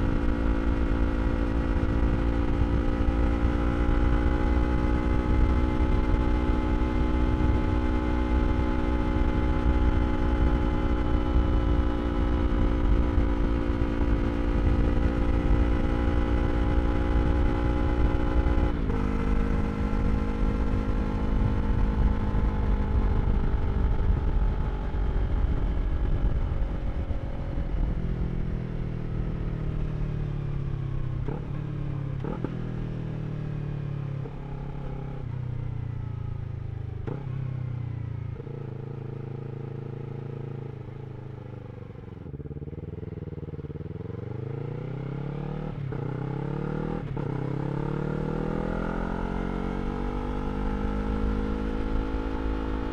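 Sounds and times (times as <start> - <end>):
wind rumble on microphone: 0.0 - 29.3
motorcycle engine: 0.0 - 52.9.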